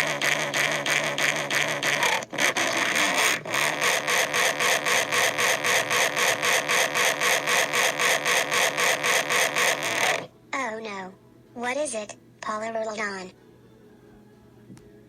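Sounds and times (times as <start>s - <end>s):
loud harsh pulsing noise: 0.0s - 10.3s.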